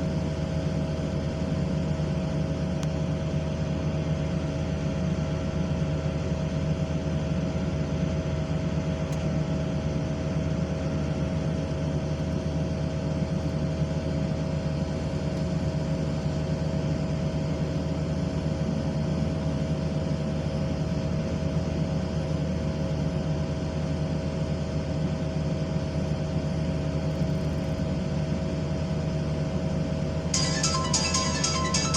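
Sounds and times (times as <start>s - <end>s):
excavator engine droning: 26.8s - 31.9s.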